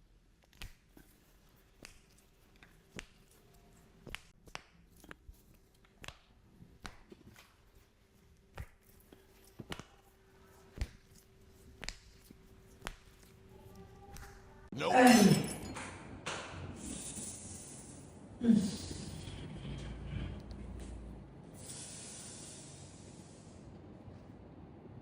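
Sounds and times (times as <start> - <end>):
soft clicks and taps of hands: 11.8 - 13.2.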